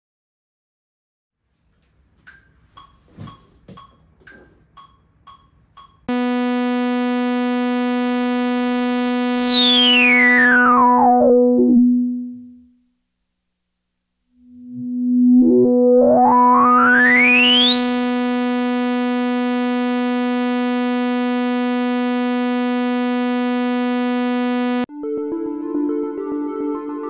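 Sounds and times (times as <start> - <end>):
synthesizer filter sweep: 6.1 - 12.6, 14.8 - 24.9.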